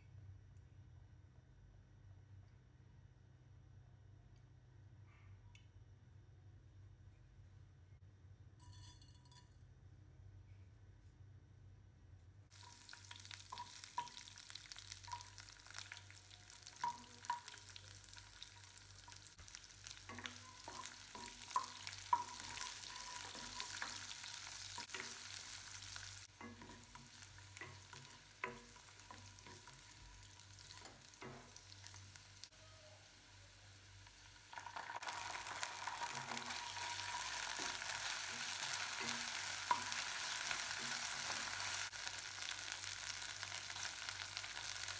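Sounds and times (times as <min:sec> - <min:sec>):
food sizzling in oil: 0:12.5 - 0:44.9
spatula scraping pan: 0:19.8 - 0:32.0.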